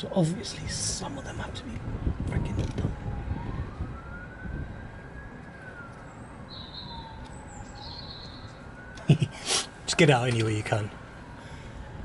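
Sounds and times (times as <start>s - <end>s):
faint siren wailing: 0.0s - 12.0s
bird chirping: 6.0s - 9.0s.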